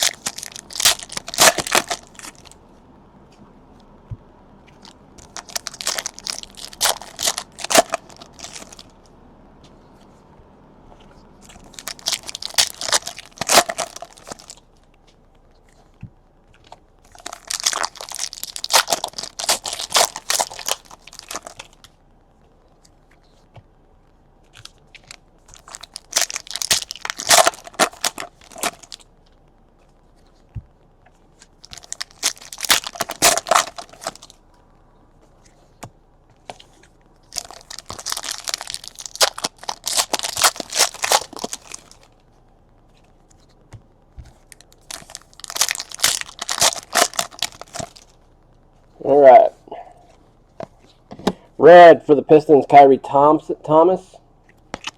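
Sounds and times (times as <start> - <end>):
card wrappers tearing and crinkling: 0.0 - 2.6, 4.7 - 9.0, 11.0 - 14.7, 16.6 - 22.0, 24.5 - 29.1, 31.3 - 34.4, 36.4 - 42.2, 44.2 - 48.2.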